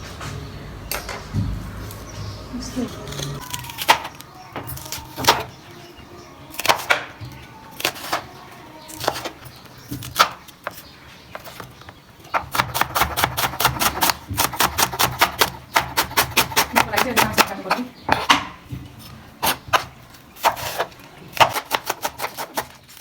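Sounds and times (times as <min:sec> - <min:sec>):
knife chopping on cutting board: 0:09.0 - 0:09.4, 0:12.4 - 0:18.5, 0:19.4 - 0:22.8.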